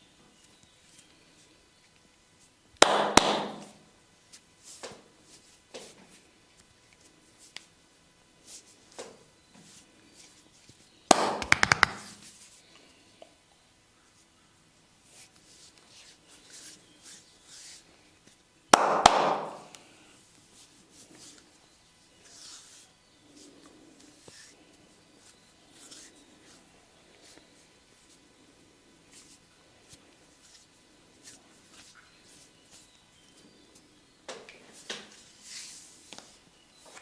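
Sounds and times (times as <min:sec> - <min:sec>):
sharp knocks: 0:02.8 - 0:03.7, 0:18.8 - 0:19.7
hands rubbing skin and hair: 0:11.1 - 0:12.6, 0:25.2 - 0:28.2
rubbing and brushing on skin: 0:15.0 - 0:17.9, 0:22.2 - 0:24.6, 0:25.2 - 0:27.4, 0:35.1 - 0:36.4.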